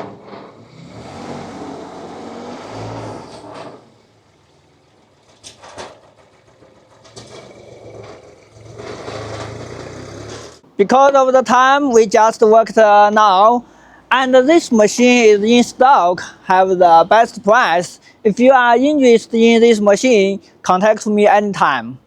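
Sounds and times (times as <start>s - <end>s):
small diesel engine working: 0.0s - 10.7s.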